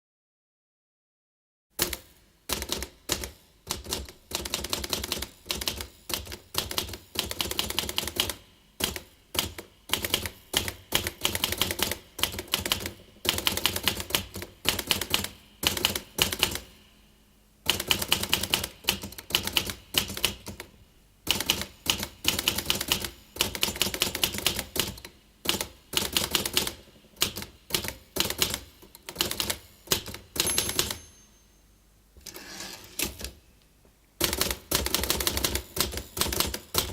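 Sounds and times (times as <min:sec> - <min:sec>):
typewriter keys clattering: 0:01.8 - 0:16.6, 0:21.3 - 0:31.1, 0:34.2 - 0:36.9.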